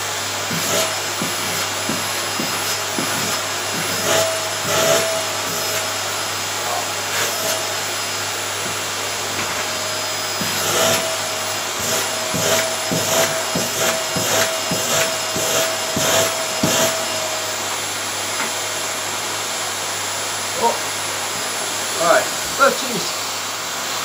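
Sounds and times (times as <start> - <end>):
vacuum cleaner on carpet: 0.0 - 24.0.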